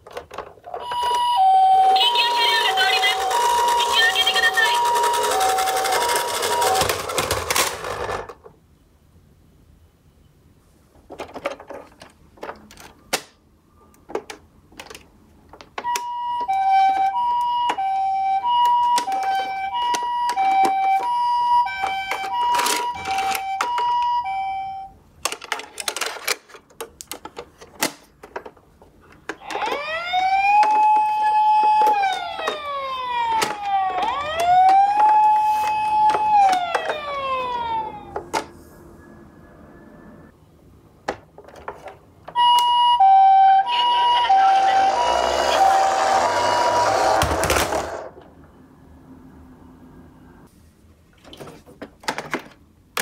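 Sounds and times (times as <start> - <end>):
wailing siren: 0.8 - 7.2, 15.9 - 24.9, 29.4 - 40.3, 42.4 - 48.1
two-tone electronic ambulance siren: 0.8 - 7.3, 15.8 - 24.9, 29.4 - 40.3, 42.3 - 48.1
toy cars clicking and clattering: 2.3 - 8.4, 25.3 - 29.9, 44.2 - 48.1.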